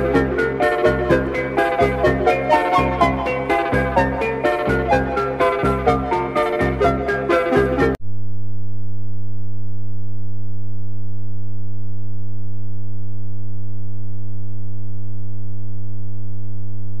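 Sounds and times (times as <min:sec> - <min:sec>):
low buzzy electronic tone: 0:08.0 - 0:17.0.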